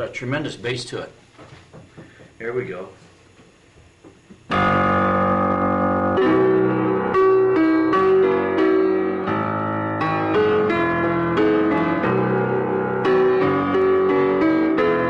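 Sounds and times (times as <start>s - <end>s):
piano chords: 4.4s - 15.0s.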